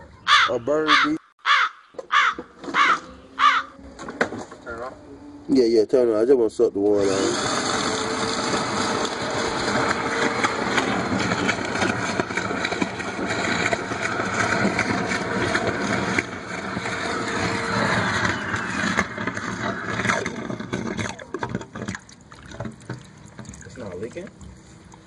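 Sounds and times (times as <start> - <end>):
wet vacuum sucking water: 7.0 - 25.0.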